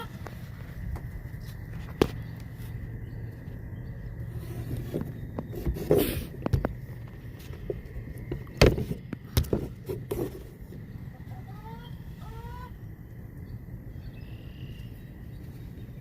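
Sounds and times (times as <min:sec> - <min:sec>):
hen calling: 0:00.0 - 0:00.6, 0:11.0 - 0:12.9.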